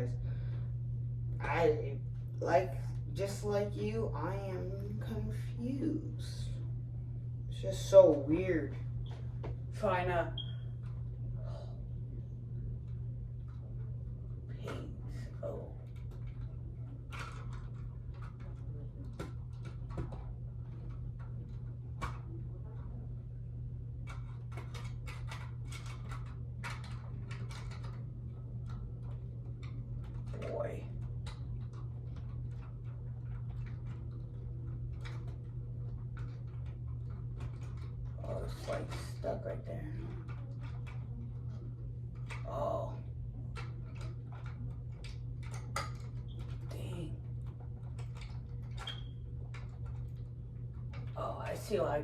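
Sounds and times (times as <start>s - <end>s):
low hum: 0.0s - 52.0s
plastic clicks and rattles: 16.0s - 22.3s, 24.1s - 28.0s, 43.5s - 46.7s, 47.4s - 51.1s.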